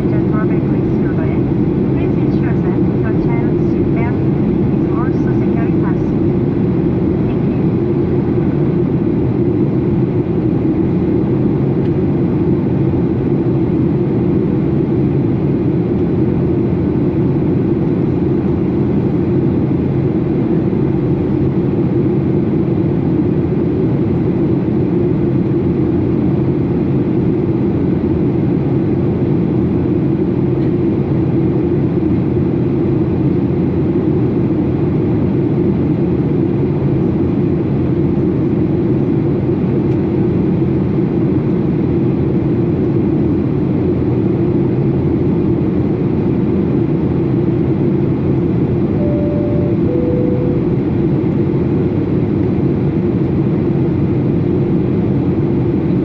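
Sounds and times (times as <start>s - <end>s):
airplane cabin drone: 0.0s - 56.0s.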